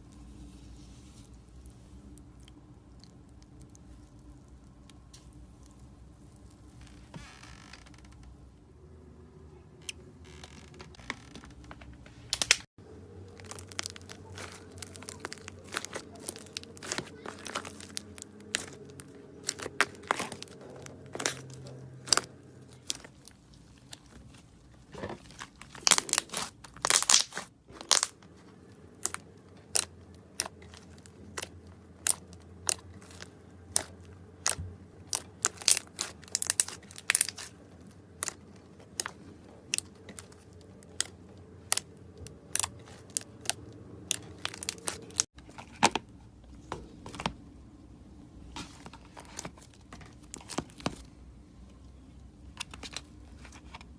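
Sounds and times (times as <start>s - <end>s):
slime crackling and popping: 13.2s - 45.3s.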